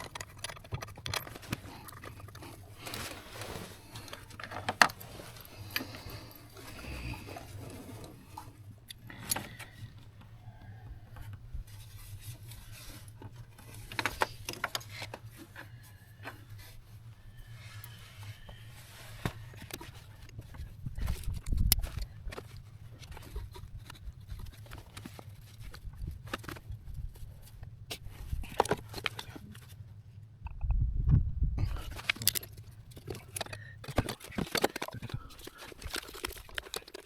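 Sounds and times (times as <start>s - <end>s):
metal tools and parts clinking: 0.0s - 9.6s, 31.8s - 37.0s
low steady hum: 0.0s - 37.0s.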